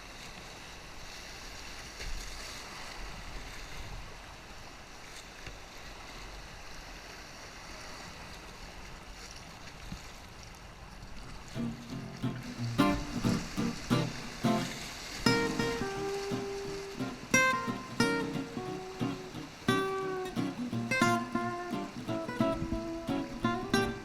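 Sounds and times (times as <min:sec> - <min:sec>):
faint splashes: 0:11.5 - 0:24.0
river water rushing: 0:11.6 - 0:24.0.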